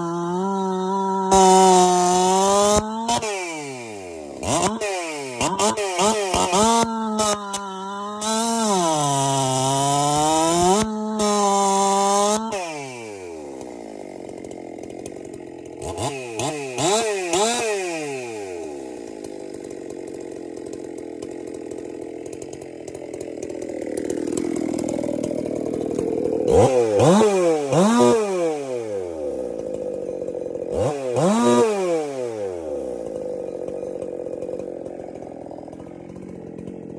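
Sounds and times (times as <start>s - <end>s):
chainsaw revving and idling: 0.0s - 36.9s.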